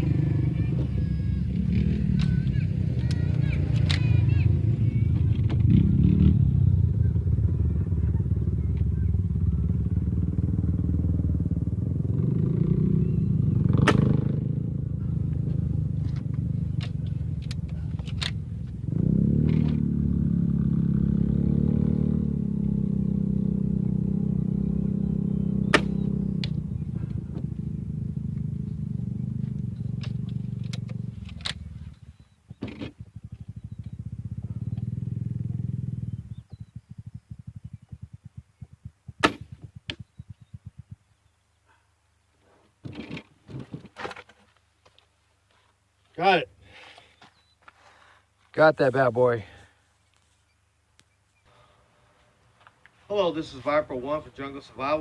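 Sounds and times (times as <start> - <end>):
steady low rumble: 0.0 - 41.5
sharp clicks and knocks: 37.6 - 41.0.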